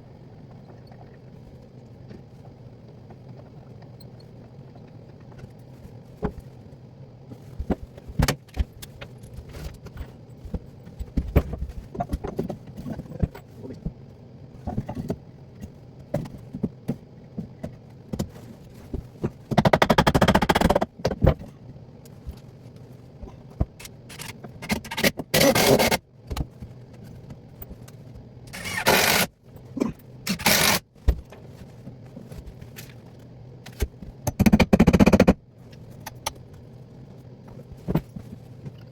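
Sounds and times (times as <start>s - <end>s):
loud rattling bursts: 28.5s - 29.3s.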